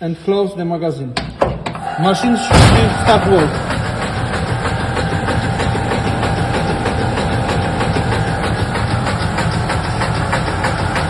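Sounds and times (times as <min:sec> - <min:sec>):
meat dicer machine running: 0:02.5 - 0:11.0.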